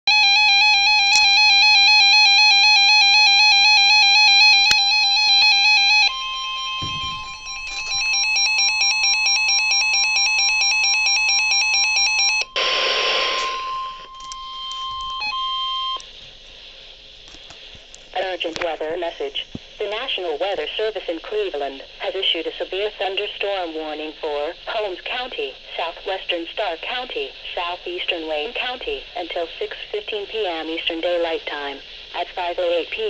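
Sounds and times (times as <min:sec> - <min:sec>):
pulsing buzzy multi-tone alarm: 0:00.1 - 0:16.0
steady high alarm tone: 0:00.1 - 0:16.0.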